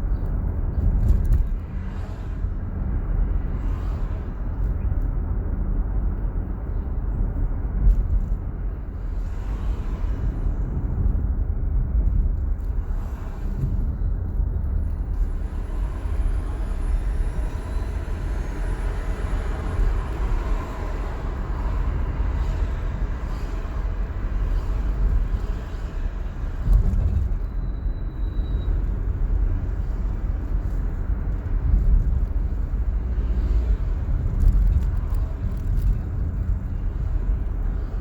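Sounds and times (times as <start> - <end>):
tyre and road noise: 0.0 - 38.0
wind rumble through open window: 0.0 - 38.0.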